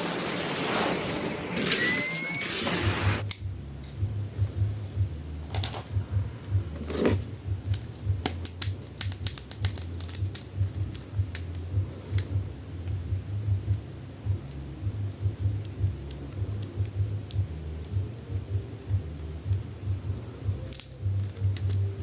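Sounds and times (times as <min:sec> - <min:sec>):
low uneven rumble: 0:03.2 - 0:22.0
plastic clicks and taps: 0:05.5 - 0:05.9, 0:06.7 - 0:13.0.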